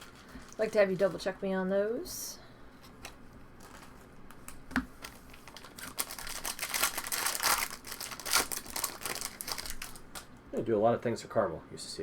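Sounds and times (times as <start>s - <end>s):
foil wrapper crinkling and tearing: 3.0s - 10.3s.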